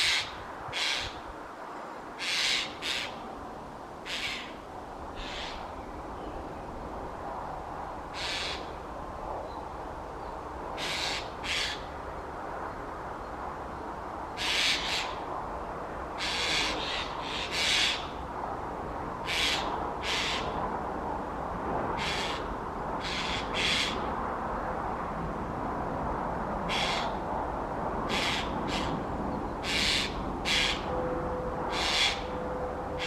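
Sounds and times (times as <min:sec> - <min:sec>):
bird giving harsh calls: 0:00.0 - 0:01.2, 0:02.2 - 0:03.2, 0:04.0 - 0:04.6, 0:05.2 - 0:05.6, 0:08.1 - 0:08.7, 0:10.8 - 0:11.8, 0:14.4 - 0:15.2, 0:16.2 - 0:18.1, 0:19.3 - 0:20.6, 0:22.0 - 0:24.0, 0:26.7 - 0:27.2, 0:29.6 - 0:30.9, 0:31.7 - 0:32.3.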